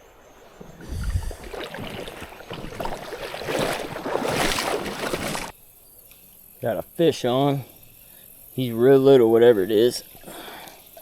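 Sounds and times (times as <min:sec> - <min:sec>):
water splashing in a creek: 0:00.0 - 0:05.6.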